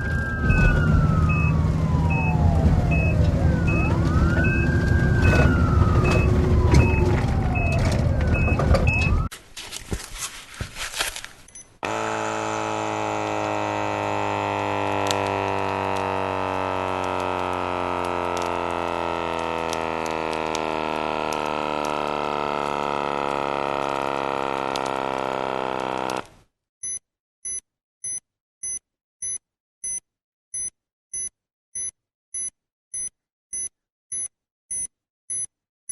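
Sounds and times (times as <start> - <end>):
emergency siren wailing: 0.0 - 9.3, 11.9 - 26.2.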